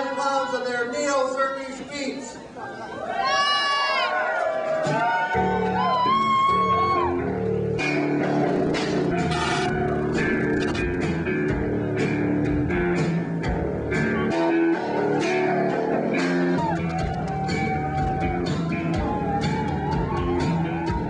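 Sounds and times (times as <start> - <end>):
rock band playing: 4.8 - 21.0.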